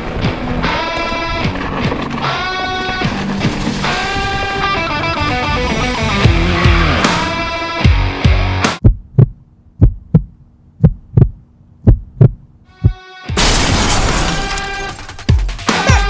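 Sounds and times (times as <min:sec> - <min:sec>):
rock music with guitar: 0:02.2 - 0:08.8
heartbeat thumps: 0:08.3 - 0:13.0.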